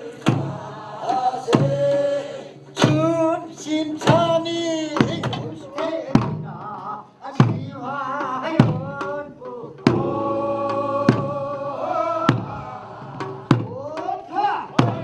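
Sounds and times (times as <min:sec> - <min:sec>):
voices singing wavering melody: 0:00.0 - 0:02.8, 0:09.6 - 0:13.8
slow drum beat: 0:00.0 - 0:15.0.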